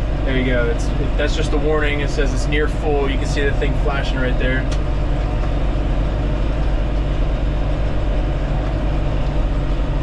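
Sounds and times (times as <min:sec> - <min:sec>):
tractor engine running under load: 0:00.0 - 0:10.0.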